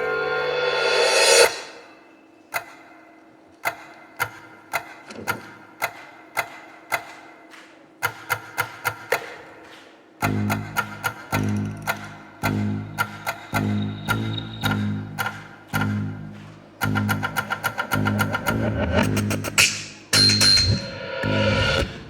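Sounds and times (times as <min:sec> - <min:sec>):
sharp ticking percussion strikes: 0:10.2 - 0:22.0.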